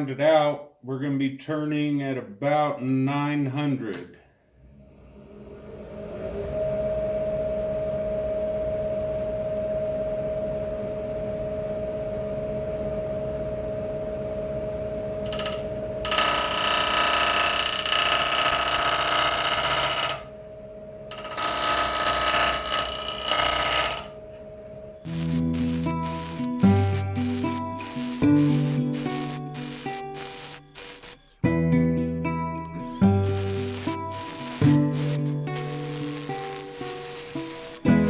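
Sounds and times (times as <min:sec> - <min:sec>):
wood lathe motor whine: 0:15.2 - 0:25.1
gouge cutting wood: 0:21.1 - 0:24.1.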